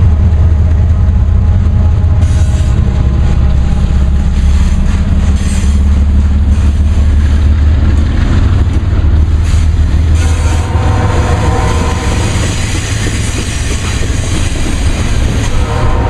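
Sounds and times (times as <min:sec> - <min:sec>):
freight train rumbling past: 0:00.0 - 0:16.0.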